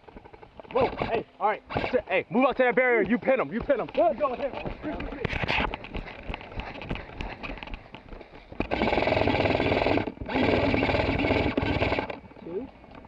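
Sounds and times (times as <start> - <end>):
airsoft machine gun full-auto bursts: 8.6 - 12.2.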